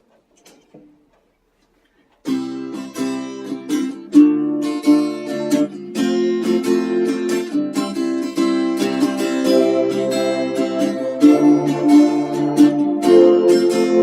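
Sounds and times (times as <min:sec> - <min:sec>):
guitar strumming chords: 0:09.4 - 0:14.0.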